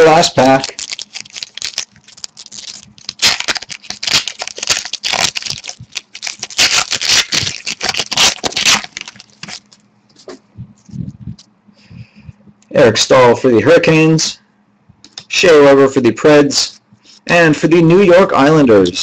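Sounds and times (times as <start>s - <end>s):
card pack wrapper crinkling: 0.0s - 9.8s.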